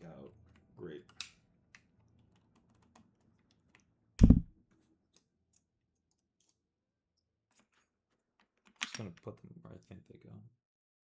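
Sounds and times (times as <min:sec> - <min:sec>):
loud deep thump: 0:04.2 - 0:04.5.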